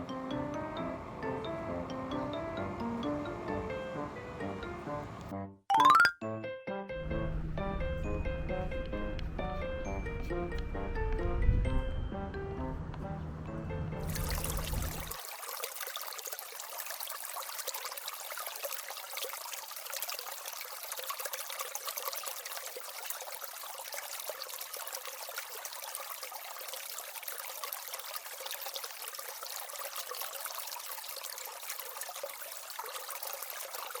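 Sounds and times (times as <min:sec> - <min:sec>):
water trickling and splashing: 0:14.0 - 0:34.0.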